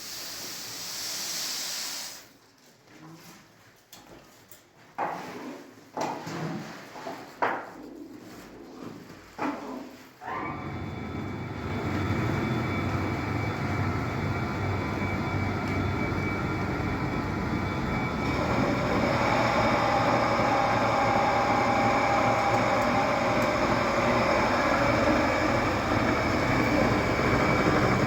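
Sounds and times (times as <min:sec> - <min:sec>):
mechanical rumble with steady tones: 0:10.9 - 0:28.0.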